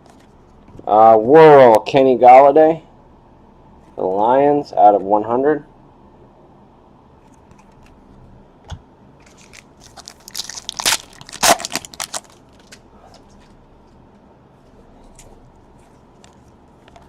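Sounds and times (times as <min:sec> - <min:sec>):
packaging crinkling and rustling: 0:09.2 - 0:14.0.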